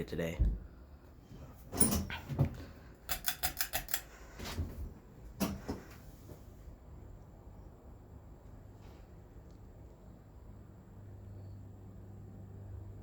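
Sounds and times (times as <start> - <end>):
ceiling fan clicks and knocks: 1.6 - 6.0
faint low hum: 4.0 - 13.0.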